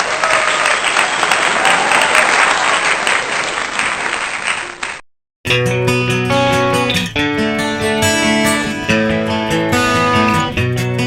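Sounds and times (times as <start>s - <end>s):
crowd applauding: 0.0s - 5.0s
strummed acoustic guitar music: 5.5s - 11.0s.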